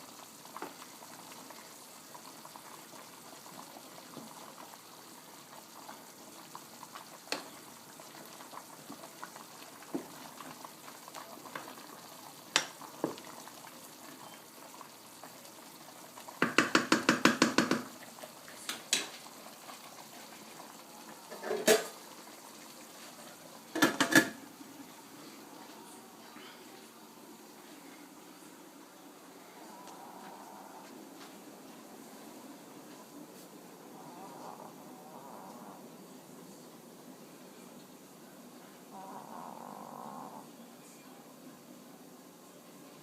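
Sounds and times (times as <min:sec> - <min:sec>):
pot boiling with low hiss: 0:00.0 - 0:43.0
pot lid rattling: 0:21.3 - 0:22.0.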